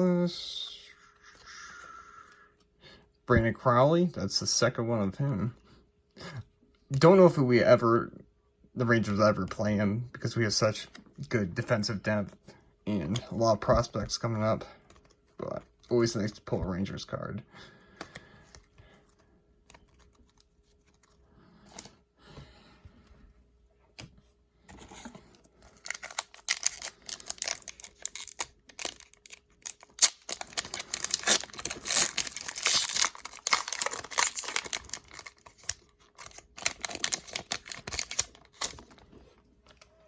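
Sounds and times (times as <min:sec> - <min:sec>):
card pack wrapper tearing: 0:25.6 - 0:39.0.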